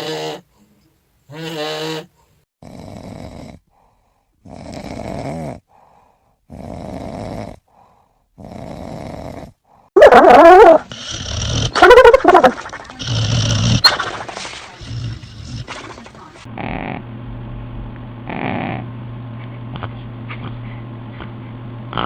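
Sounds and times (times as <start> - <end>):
cat snoring: 1.4 - 3.8, 4.4 - 5.6, 6.5 - 7.6, 8.4 - 9.6, 10.9 - 11.7, 18.3 - 18.8.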